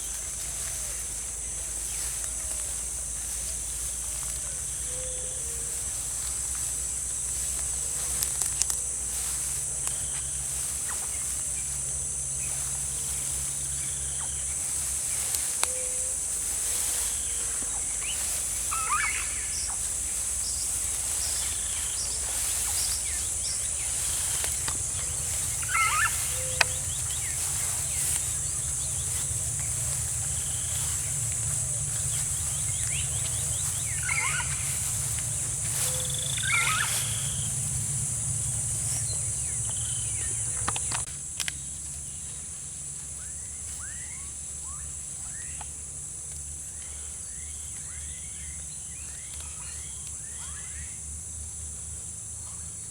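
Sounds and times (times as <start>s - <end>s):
high-pitched insect chorus: 0.0s - 52.9s
bird chirps: 16.7s - 37.5s.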